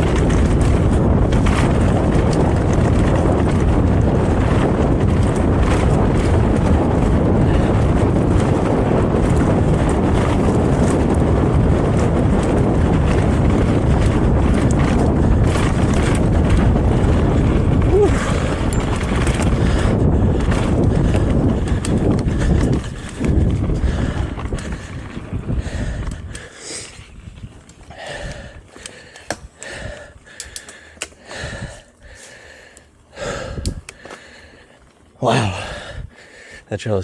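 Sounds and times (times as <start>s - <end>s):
bike clicks and rattles: 0.0s - 37.0s
tyre and trail noise: 0.0s - 37.0s
wind buffeting microphone: 0.0s - 37.0s.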